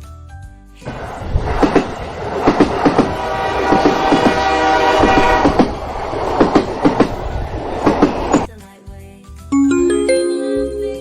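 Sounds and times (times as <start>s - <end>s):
train wheels clacking on rails: 0.9s - 8.5s
train horn blast: 3.0s - 5.7s.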